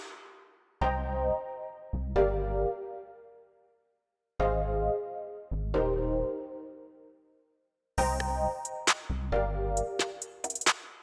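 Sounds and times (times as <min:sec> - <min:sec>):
deep bass note: 0:08.0 - 0:08.5.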